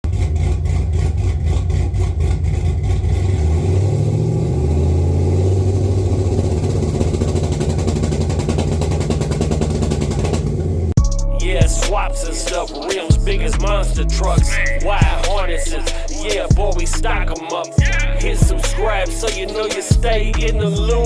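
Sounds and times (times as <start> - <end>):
engine running and revving: 0.0 - 21.0.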